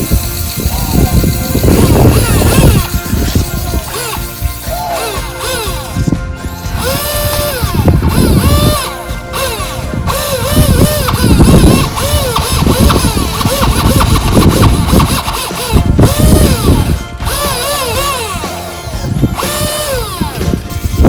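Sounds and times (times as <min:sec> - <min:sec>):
melody over pulsing beat: 0:00.0 - 0:21.0.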